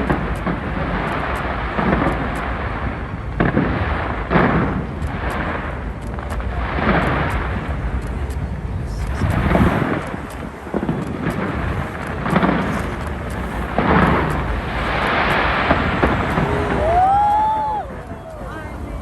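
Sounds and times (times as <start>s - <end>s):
fireworks booms: 0.0s - 7.7s
fireworks rumbling: 0.0s - 19.0s.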